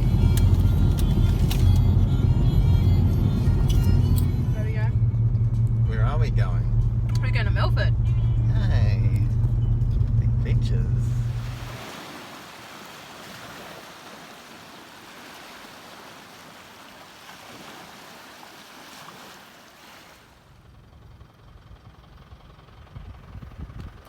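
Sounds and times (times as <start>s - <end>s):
low rumble: 0.0s - 11.8s
rushing water noise: 11.2s - 20.4s.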